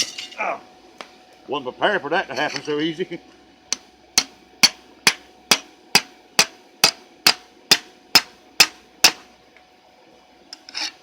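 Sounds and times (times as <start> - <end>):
hammer striking steel pipe: 3.7 - 9.3.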